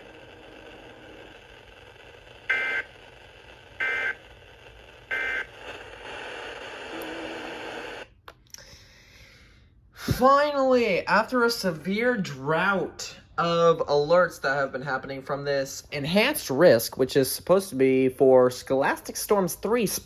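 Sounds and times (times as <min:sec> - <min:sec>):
faint radio hiss: 0:00.0 - 0:08.7.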